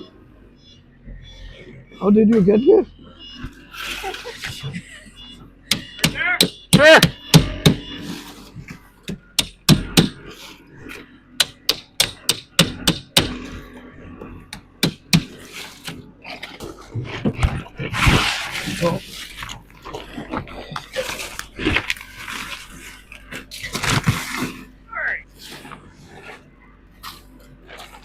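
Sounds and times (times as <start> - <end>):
sharp irregular knocks and thwacks: 14.5 - 16.0.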